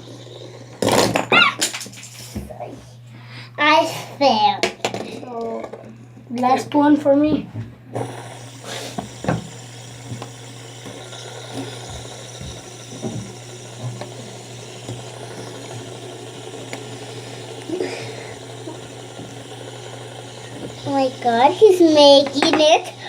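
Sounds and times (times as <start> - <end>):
fidget spinners whirring: 0.0 - 2.8, 3.6 - 23.0
spinners clicking and tapping: 8.0 - 23.0.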